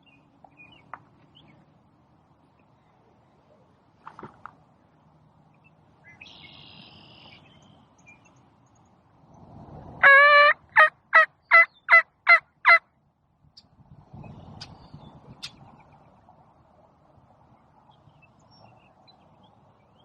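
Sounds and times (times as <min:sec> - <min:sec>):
wild turkey yelping: 0:10.0 - 0:12.8.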